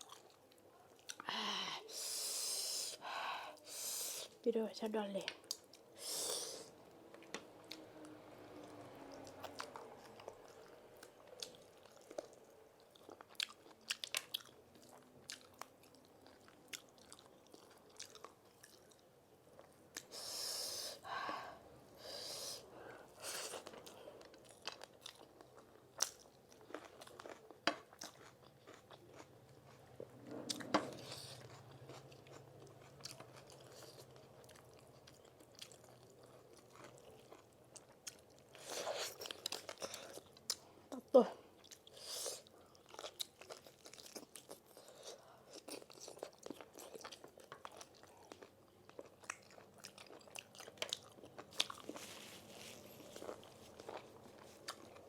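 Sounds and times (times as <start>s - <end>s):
person chewing and crunching food: 0.0s - 1.6s, 5.4s - 20.4s, 22.0s - 55.0s.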